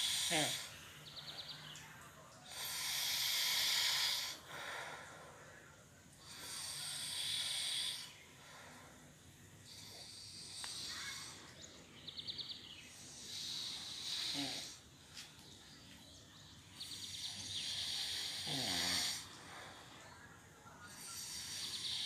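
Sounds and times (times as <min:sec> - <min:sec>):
girl snoring: 0:00.0 - 0:00.8, 0:02.5 - 0:04.5, 0:06.2 - 0:08.2, 0:09.7 - 0:11.4, 0:13.1 - 0:14.8, 0:17.1 - 0:19.4, 0:20.9 - 0:22.0.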